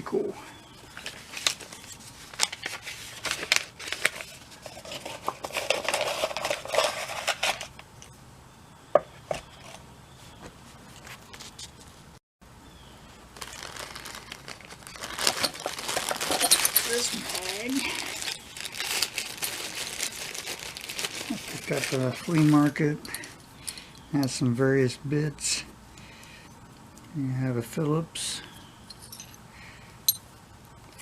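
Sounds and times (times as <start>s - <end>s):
rustling: 0.8s - 7.8s, 13.0s - 23.9s
metal tools clicking and clinking: 16.3s - 17.5s, 28.8s - 29.4s.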